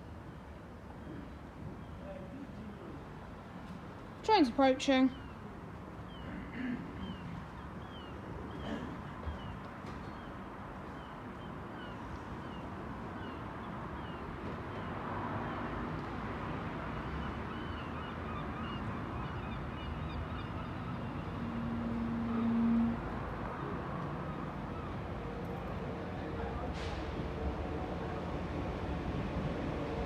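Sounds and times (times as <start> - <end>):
train horn: 21.4 - 23.4.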